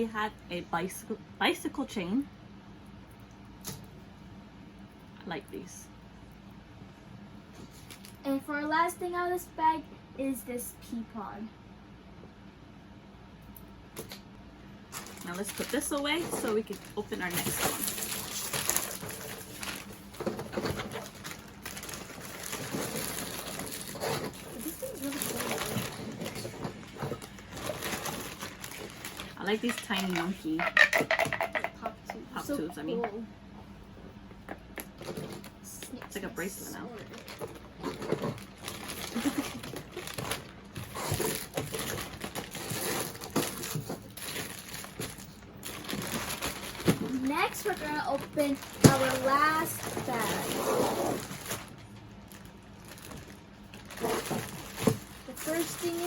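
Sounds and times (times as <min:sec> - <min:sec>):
plastic packaging rustling: 0:14.9 - 0:31.1, 0:36.6 - 0:56.0.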